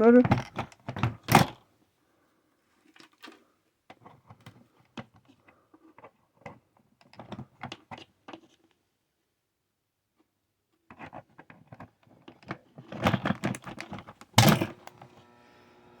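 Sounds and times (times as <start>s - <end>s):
hands handling plastic power strip: 10.9s - 15.1s.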